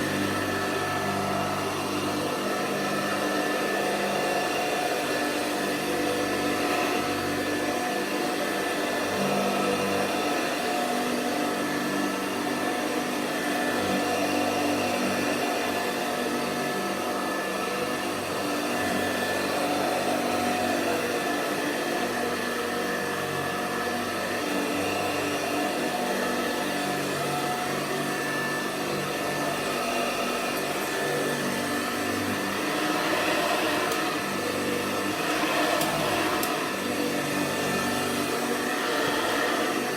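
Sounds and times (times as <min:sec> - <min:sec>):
vacuum cleaner motor whining: 0:00.0 - 0:39.9.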